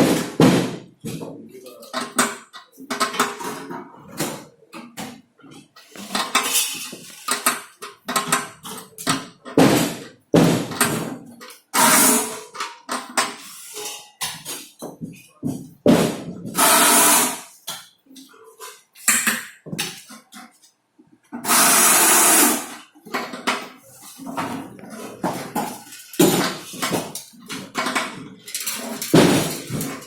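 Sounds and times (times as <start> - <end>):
metal parts clinking: 25.6 - 30.0.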